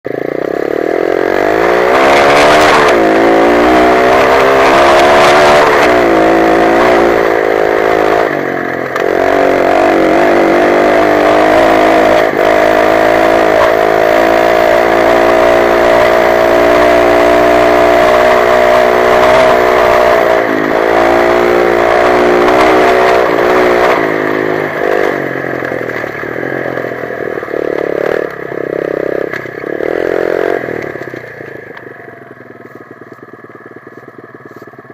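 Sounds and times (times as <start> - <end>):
dirt bike engine revving: 0.1 - 34.7.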